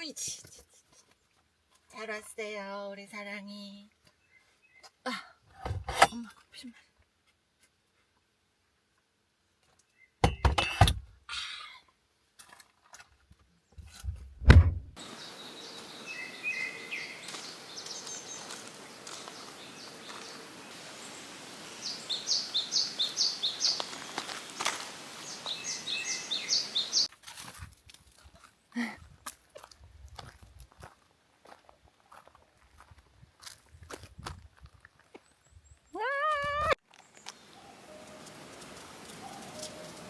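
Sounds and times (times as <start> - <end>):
loud thump: 14.4 - 15.0
small bird chirping: 15.0 - 27.1, 37.0 - 40.0
steady outdoor hiss: 15.0 - 27.1, 37.0 - 40.0.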